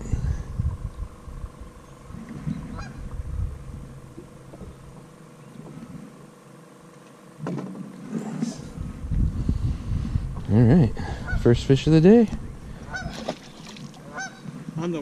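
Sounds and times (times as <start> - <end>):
goose honking: 12.8 - 13.2, 14.0 - 14.5.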